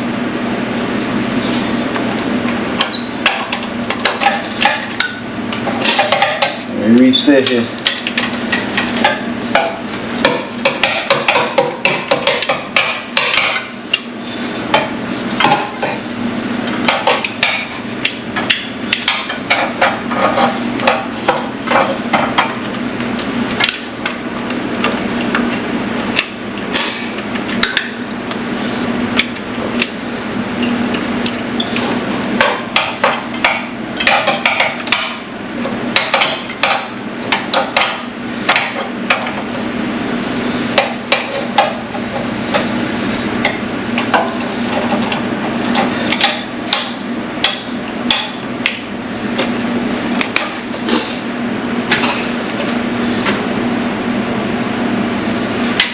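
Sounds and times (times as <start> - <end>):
steady hum: 0.0 - 55.9.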